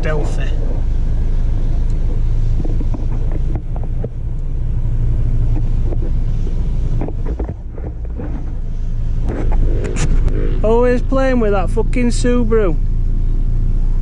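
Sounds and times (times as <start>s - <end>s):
car engine droning: 0.0s - 14.0s
wind on microphone: 0.6s - 11.0s.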